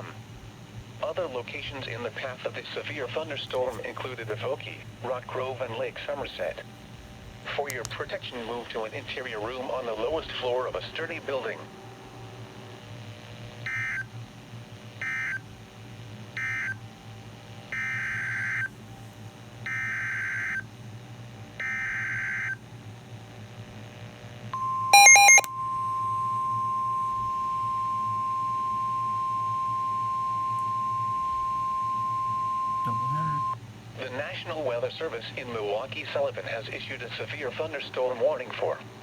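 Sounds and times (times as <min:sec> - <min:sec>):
harsh buzzing beep: 0:24.6 - 0:33.6
steady alarm tone: 0:24.6 - 0:33.6.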